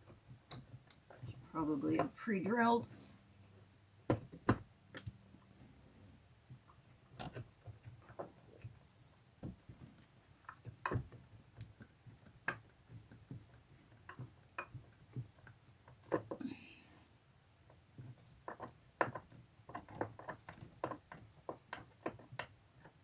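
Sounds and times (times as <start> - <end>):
small hardware clicking and knocking: 18.0 - 23.0.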